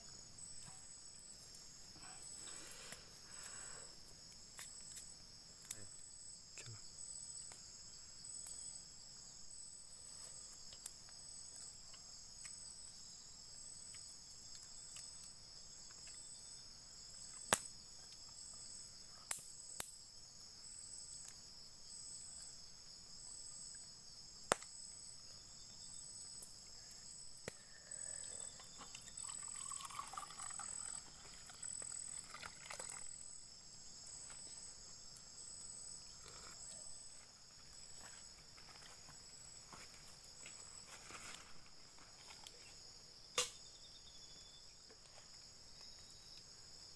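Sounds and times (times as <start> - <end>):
insects chirping: 0.0 - 46.9.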